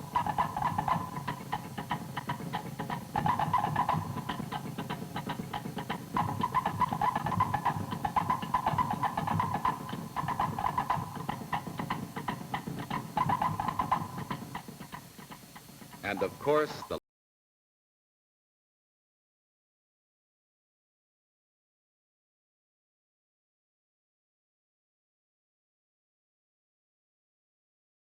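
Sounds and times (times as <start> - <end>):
fast dance drumming: 0.0 - 17.0.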